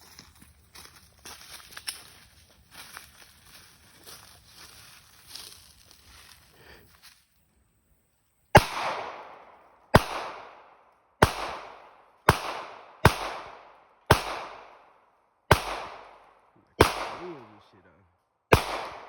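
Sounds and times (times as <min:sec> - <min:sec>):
pistol shots with echo: 0:08.6 - 0:17.7, 0:18.5 - 0:19.0.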